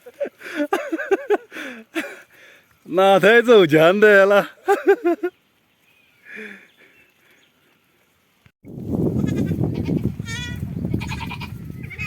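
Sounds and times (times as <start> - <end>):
goats bleating: 9.2 - 12.0.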